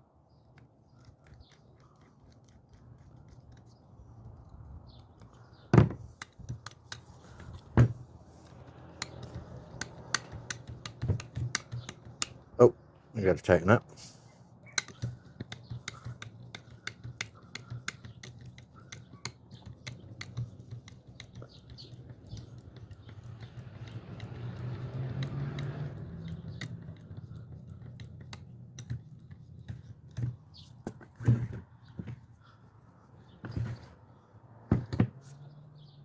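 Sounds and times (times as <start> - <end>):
tools clicking on metal parts: 6.1 - 7.7, 8.4 - 12.5, 14.7 - 30.6.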